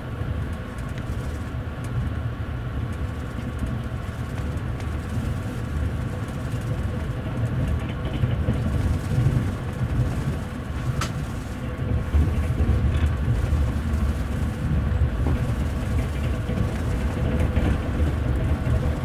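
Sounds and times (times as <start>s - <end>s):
train carriage rumbling on rails: 0.0s - 19.0s.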